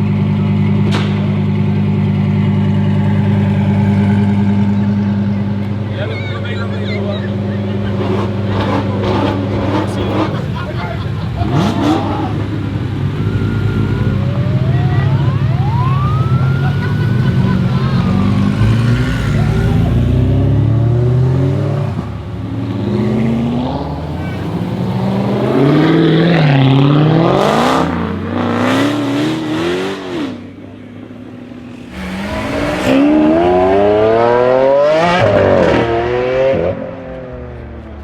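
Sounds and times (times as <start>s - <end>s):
car engine revving: 0.0s - 37.6s.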